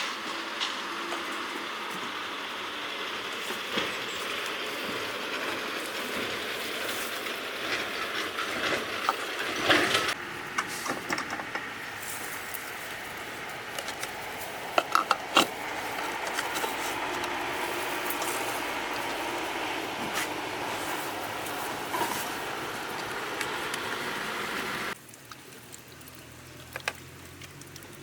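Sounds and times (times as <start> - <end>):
steady mechanical noise: 0.0 - 25.0.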